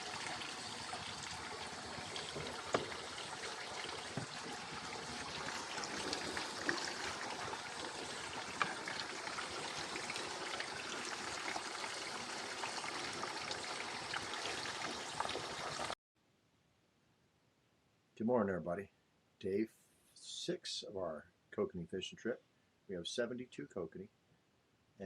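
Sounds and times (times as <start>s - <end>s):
water trickling and splashing: 0.0s - 16.0s.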